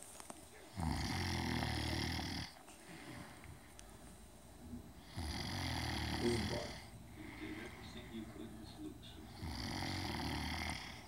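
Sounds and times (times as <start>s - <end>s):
person snoring: 0.8s - 2.6s, 5.0s - 7.8s, 9.3s - 11.0s.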